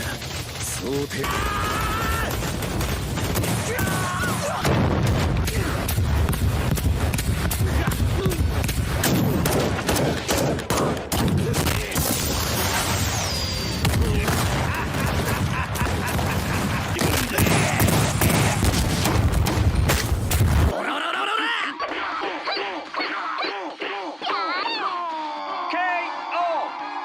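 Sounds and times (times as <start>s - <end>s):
rapid hits and blasts: 0.0s - 20.8s.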